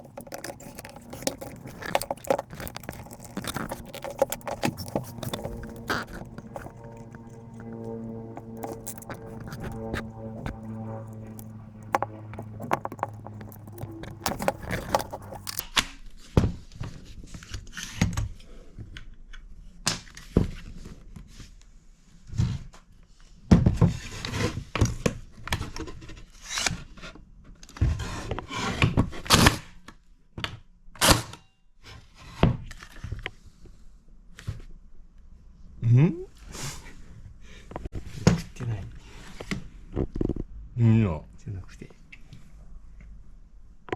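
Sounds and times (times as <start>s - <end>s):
knocks and clicks of plastic and metal: 0.0s - 15.6s.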